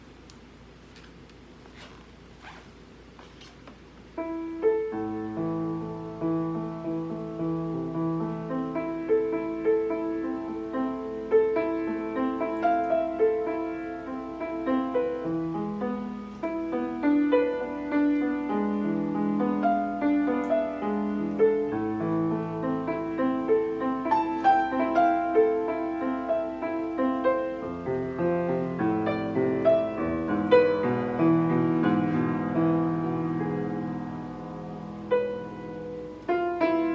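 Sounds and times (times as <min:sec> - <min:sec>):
slow piano piece: 0:03.9 - 0:36.9.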